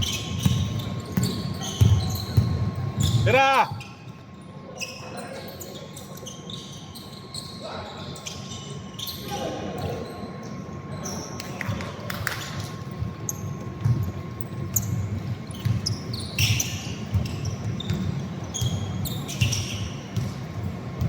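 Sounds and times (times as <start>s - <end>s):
basketball bouncing on court: 0.0s - 3.3s, 11.7s - 21.0s
sneaker squeaks: 0.0s - 21.0s.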